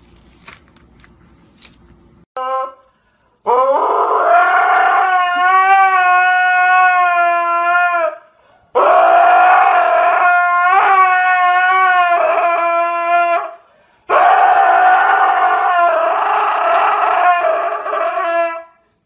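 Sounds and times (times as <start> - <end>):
dog howling: 3.5 - 8.2, 8.8 - 18.8.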